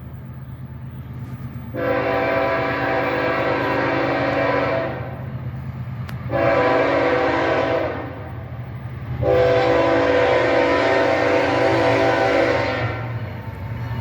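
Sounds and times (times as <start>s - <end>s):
locomotive rumbling: 0.0s - 14.0s
locomotive air horn blasts: 1.7s - 5.2s, 6.3s - 8.4s, 9.2s - 13.4s.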